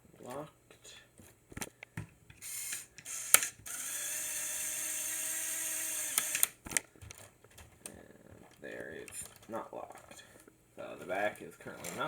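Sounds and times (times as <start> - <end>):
small motor whirring: 2.4 - 6.6.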